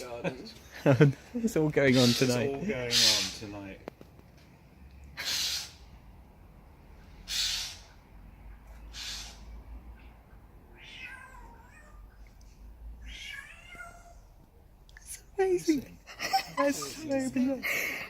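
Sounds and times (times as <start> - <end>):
jay harsh calls: 1.8 - 3.6, 5.2 - 5.9, 7.2 - 8.0, 8.8 - 9.6.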